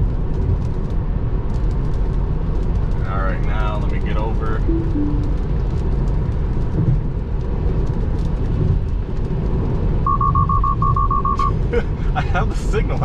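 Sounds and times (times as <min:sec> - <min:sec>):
tyres rumbling on wet road: 0:00.0 - 0:04.6, 0:05.5 - 0:10.1, 0:11.4 - 0:13.0
short high electronic beeps: 0:04.7 - 0:05.4, 0:10.1 - 0:11.5.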